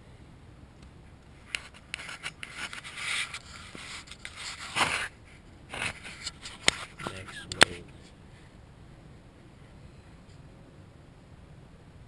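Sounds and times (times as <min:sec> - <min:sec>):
rubbing and scraping strokes: 0:01.4 - 0:07.4.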